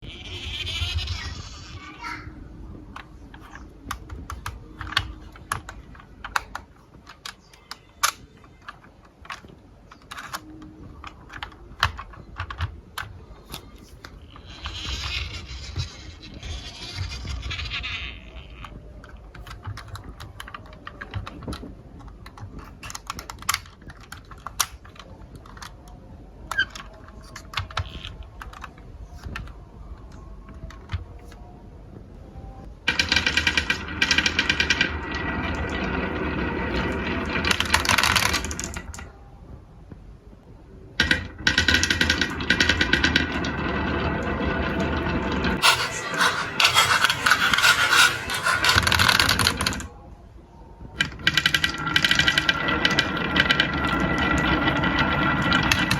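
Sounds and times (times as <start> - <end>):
marbles clattering down wooden run: 45.6 - 49.9, 51.4 - 55.9.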